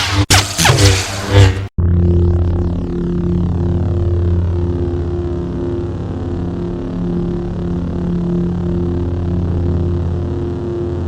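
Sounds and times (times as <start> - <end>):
lightsaber electric hum: 0.0 - 11.0.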